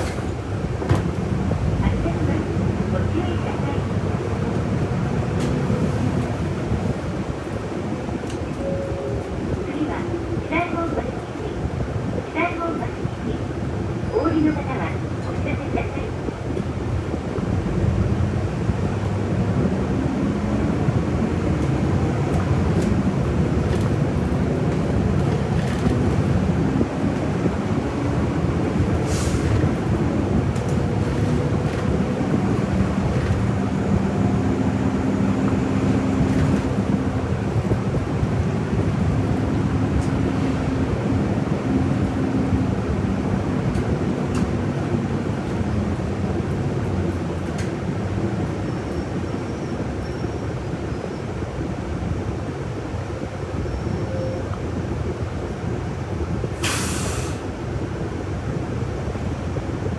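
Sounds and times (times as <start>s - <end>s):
bus engine running: 0.0s - 59.9s
road and cabin noise: 0.0s - 59.9s.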